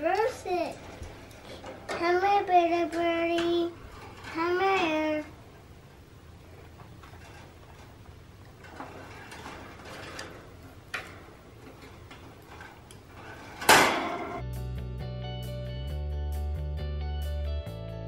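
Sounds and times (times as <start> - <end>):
faint clicks and knocks: 0.0 - 5.1, 6.6 - 13.8
music with bass and guitar: 14.3 - 18.0.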